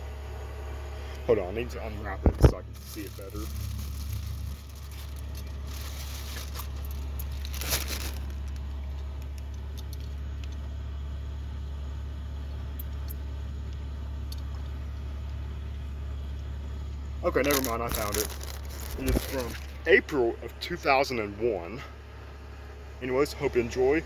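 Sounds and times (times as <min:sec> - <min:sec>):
steady low hum: 0:00.0 - 0:24.0
handling noises: 0:02.1 - 0:10.7, 0:17.2 - 0:20.0
plastic wrapping crinkling: 0:02.6 - 0:09.3, 0:17.3 - 0:19.9.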